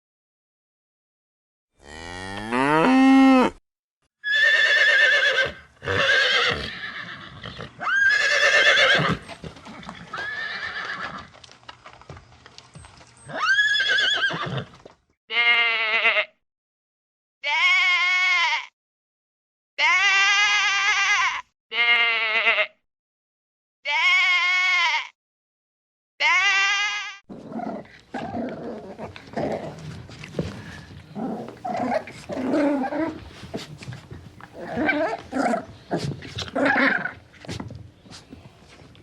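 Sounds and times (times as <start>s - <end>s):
farm animal calls: 30.5s - 37.3s.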